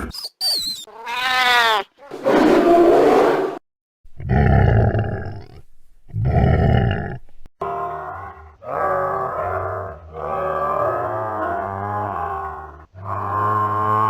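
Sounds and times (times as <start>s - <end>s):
camel bellowing and groaning: 4.2s - 14.0s.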